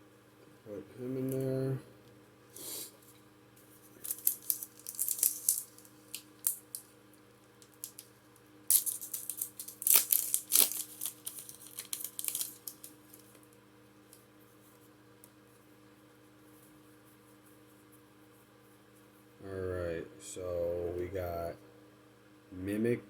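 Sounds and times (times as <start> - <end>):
foil wrapper tearing and crinkling: 4.0 - 6.9, 7.6 - 8.1, 8.7 - 13.5.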